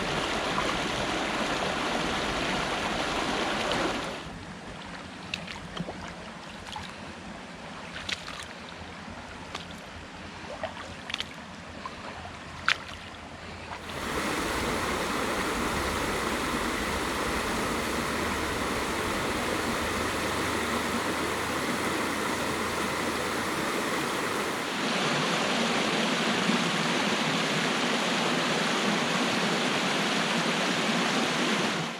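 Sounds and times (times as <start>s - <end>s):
water rushing over rapids: 0.0s - 4.3s, 13.8s - 31.9s
sharp water splashes: 13.8s - 24.9s.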